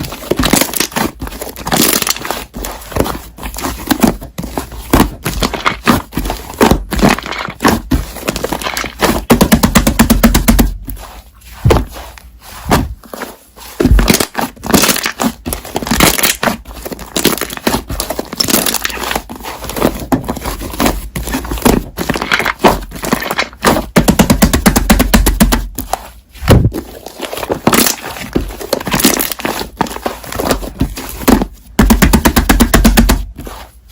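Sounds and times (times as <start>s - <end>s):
slime crackling and popping: 0.0s - 2.6s, 13.8s - 19.2s, 27.4s - 30.5s.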